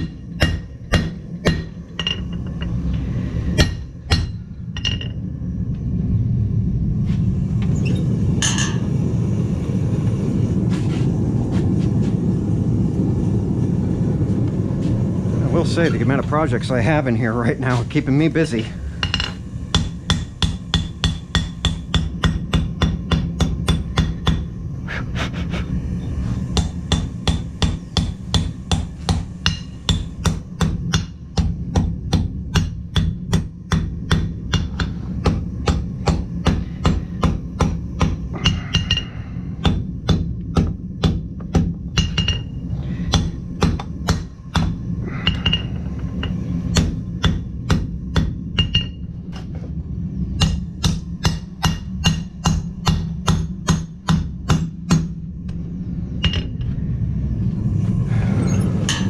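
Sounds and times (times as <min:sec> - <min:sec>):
low hum: 0:00.0 - 0:59.0
hammer ringing on anvil: 0:38.0 - 0:40.2, 0:42.0 - 0:42.5, 0:44.1 - 0:45.8, 0:46.8 - 0:49.0.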